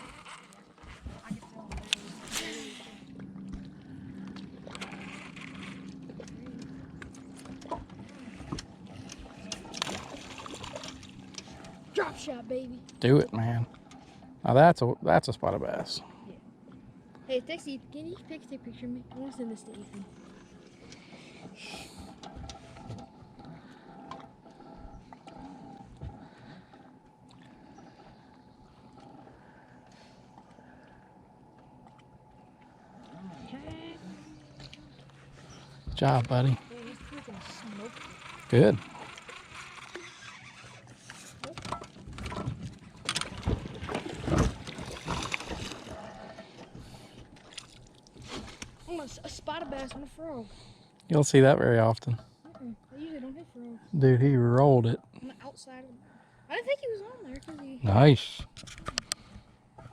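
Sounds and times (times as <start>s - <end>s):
boat engine hum: 0.0s - 59.9s
knocks and bumps on boat: 41.5s - 47.3s.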